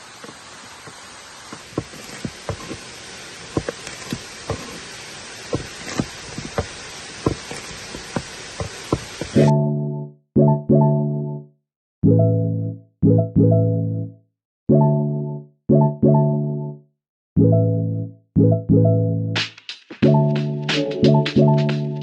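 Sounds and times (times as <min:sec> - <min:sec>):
falling water hiss: 0:00.0 - 0:09.5.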